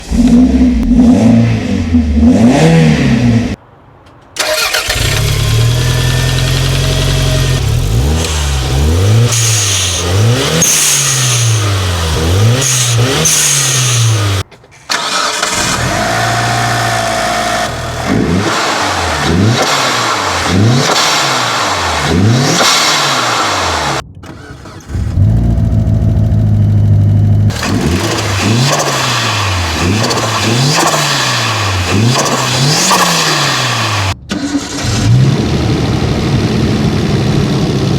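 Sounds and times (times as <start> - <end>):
car engine accelerating through gears: 4.5 - 14.4, 15.0 - 37.9.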